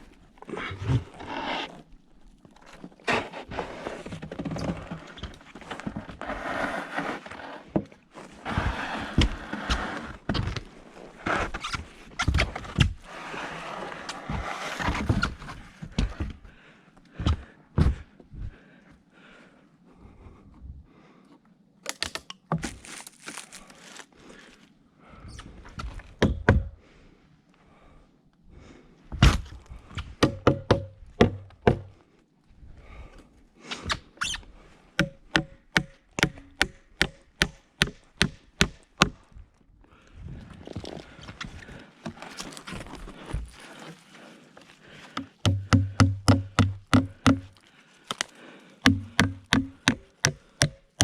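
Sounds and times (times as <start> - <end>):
hammer hitting nails into wood: 35.0 - 39.2, 45.2 - 47.6, 48.8 - 51.0.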